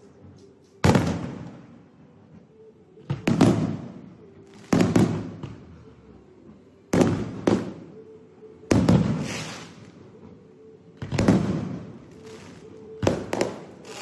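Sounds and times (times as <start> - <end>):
fireworks bangs: 0.8 - 1.6, 8.7 - 9.9, 11.0 - 14.0.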